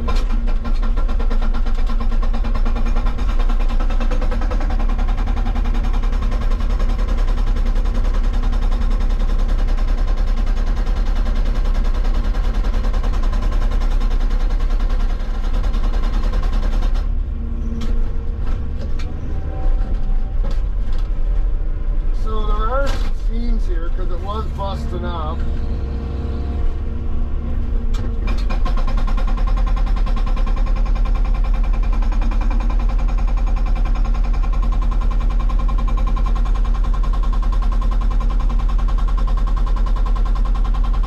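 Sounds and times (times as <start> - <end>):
hydraulic rock breaker hammering: 0.0 - 19.1, 27.8 - 41.0
scattered clicks and knocks: 0.0 - 21.6, 22.2 - 25.5, 27.9 - 41.0
excavator engine drone: 0.0 - 41.0.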